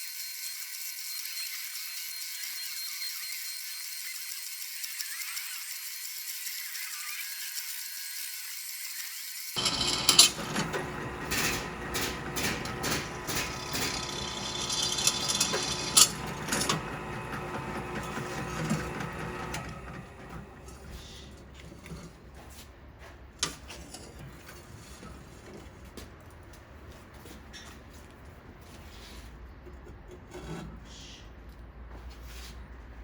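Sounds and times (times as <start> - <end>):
power drill boring: 0.0 - 20.9.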